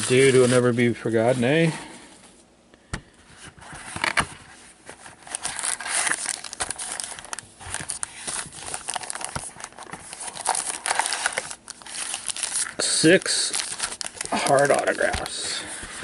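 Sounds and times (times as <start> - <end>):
card packaging tearing and crinkling: 3.7 - 16.0.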